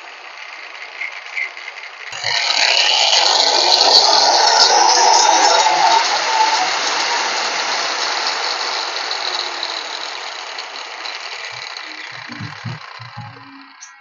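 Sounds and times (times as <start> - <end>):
angle grinder whirring down: 0.0 - 14.0.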